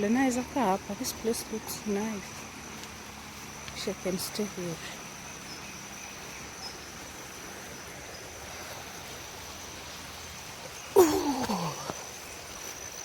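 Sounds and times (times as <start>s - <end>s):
high insect drone: 0.0s - 13.0s
river water rushing: 4.8s - 13.0s.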